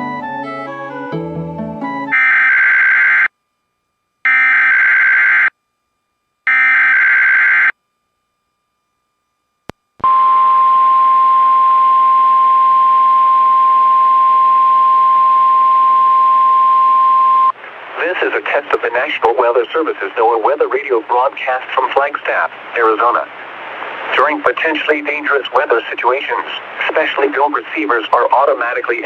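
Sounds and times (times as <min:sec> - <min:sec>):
digital data tone bursts: 0:04.3 - 0:05.5, 0:06.5 - 0:07.7
click: 0:09.7 - 0:10.1
radio hiss: 0:17.5 - 0:29.0.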